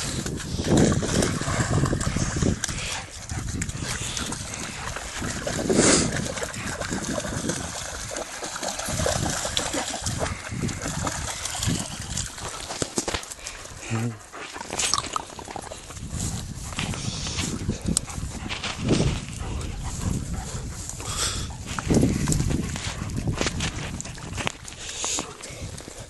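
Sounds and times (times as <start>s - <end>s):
dogs scuffling and rustling: 21.6s - 25.4s.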